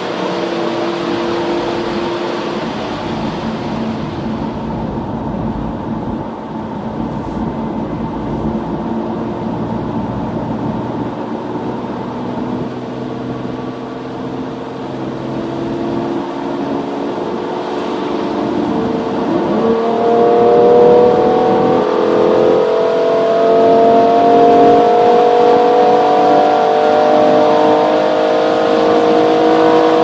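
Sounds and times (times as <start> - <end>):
car engine drone: 0.0 - 30.0
tyre and wind noise: 1.3 - 12.7.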